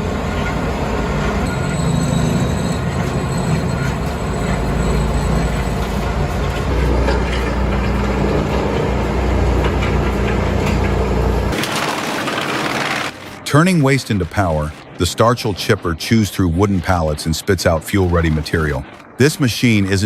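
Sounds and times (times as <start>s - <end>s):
wood being shredded: 0.0s - 13.4s
wood chipper engine rumbling: 0.0s - 13.4s.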